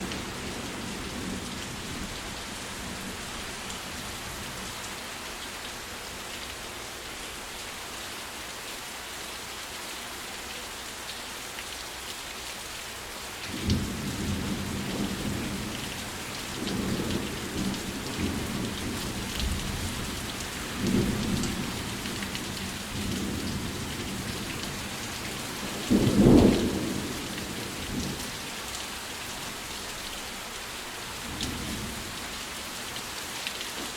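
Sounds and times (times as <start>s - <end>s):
steady rain falling: 0.0s - 33.9s.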